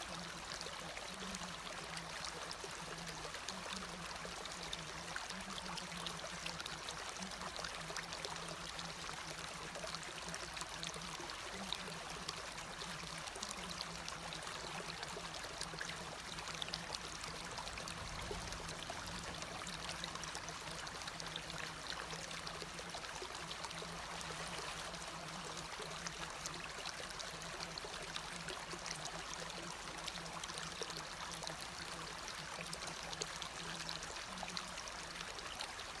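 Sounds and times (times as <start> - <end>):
steady rain falling: 11.1 - 26.4.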